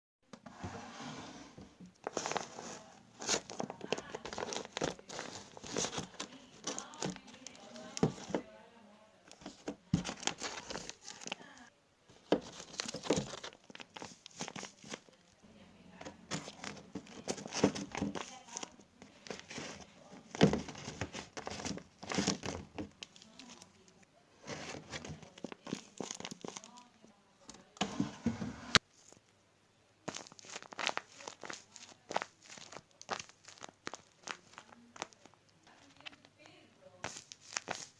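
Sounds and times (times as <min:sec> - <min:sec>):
squishy toy crinkling and crunching: 0:03.2 - 0:08.4, 0:09.3 - 0:11.6, 0:25.0 - 0:26.9, 0:30.0 - 0:37.9.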